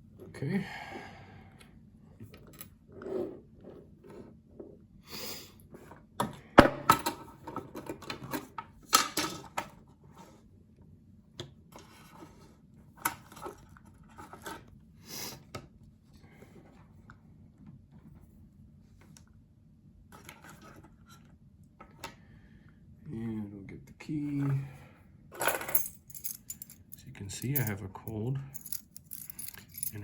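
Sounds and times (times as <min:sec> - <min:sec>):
metal parts rubbing: 0:25.7 - 0:27.8, 0:28.6 - 0:30.0
small metal lock parts clicking: 0:28.6 - 0:30.0.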